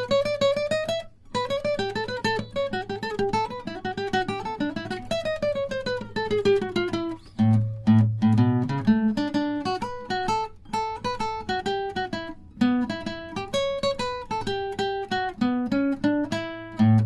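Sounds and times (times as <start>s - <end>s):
acoustic guitar plucking notes: 0.0s - 17.0s.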